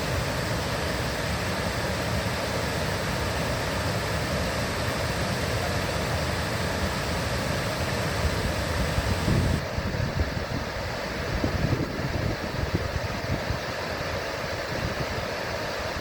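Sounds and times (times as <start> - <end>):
river water rushing: 0.0 - 16.0
wind buffeting microphone: 8.3 - 13.6.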